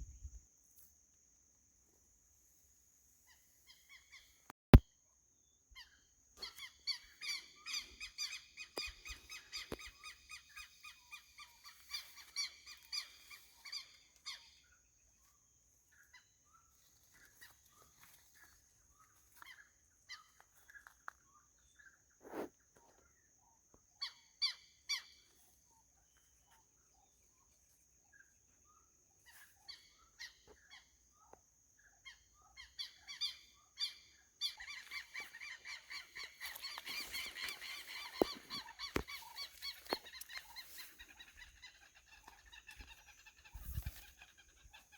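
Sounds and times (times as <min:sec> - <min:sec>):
birds calling: 0:05.8 - 0:15.0, 0:28.1 - 0:44.9.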